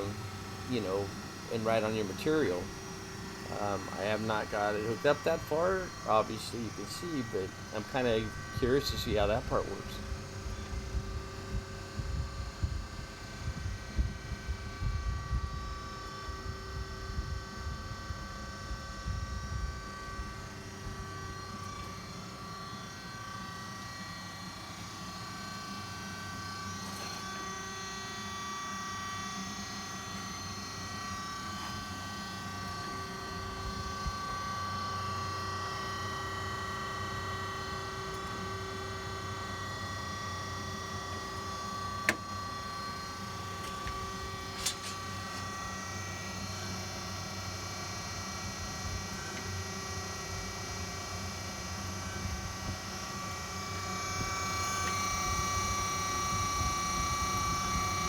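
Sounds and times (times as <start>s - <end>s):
grinder hum with whine: 0.0s - 58.0s.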